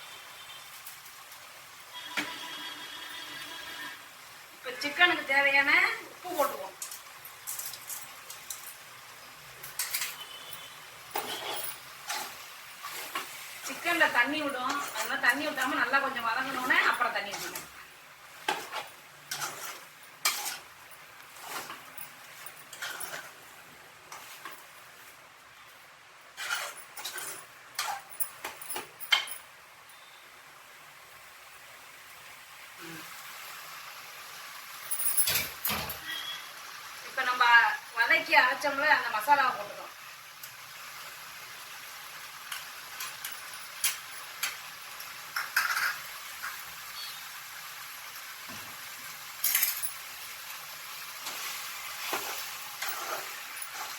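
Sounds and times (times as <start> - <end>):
chicken sizzling in a pan: 0.0 - 53.9
spatula scraping a pan: 9.7 - 25.1, 26.3 - 28.1, 51.2 - 53.9.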